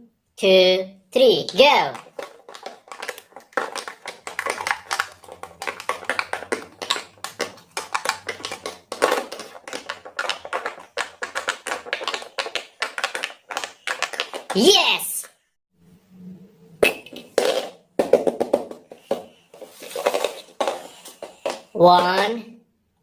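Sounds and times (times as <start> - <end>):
fidget toy bubbles popping: 2.0 - 14.6.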